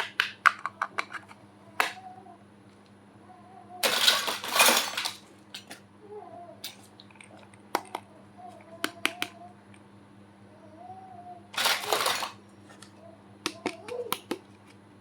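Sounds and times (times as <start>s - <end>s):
plastic pieces clicking and tapping: 0.0s - 2.0s, 6.6s - 8.1s, 8.8s - 9.4s, 13.5s - 14.8s.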